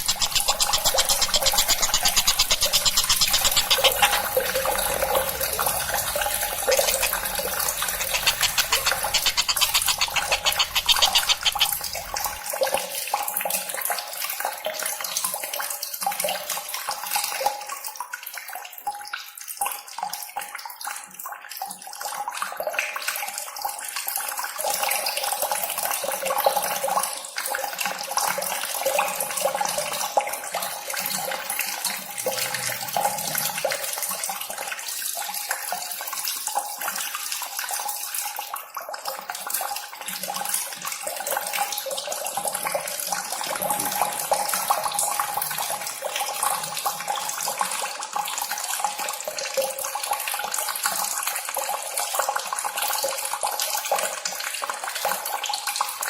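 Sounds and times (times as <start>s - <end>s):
rushing water hiss: 0.0s - 12.4s.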